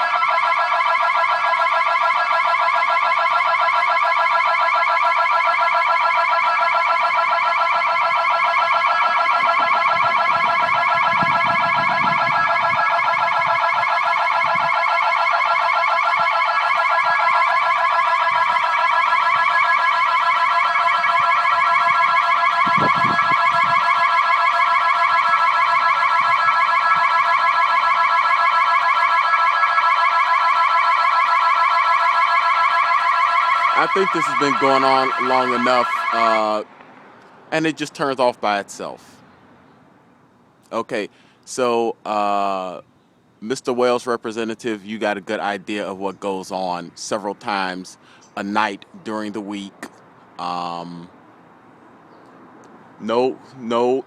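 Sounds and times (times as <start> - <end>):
warbling security alarm: 0.0 - 36.6.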